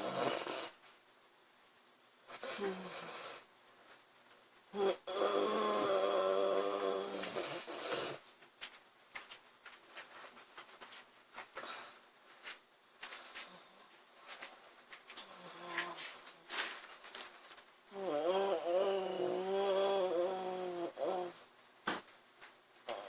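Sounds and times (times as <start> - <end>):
woman snoring faintly: 0.0 - 0.8, 2.3 - 3.5, 4.7 - 8.2, 15.2 - 16.7, 17.9 - 21.4.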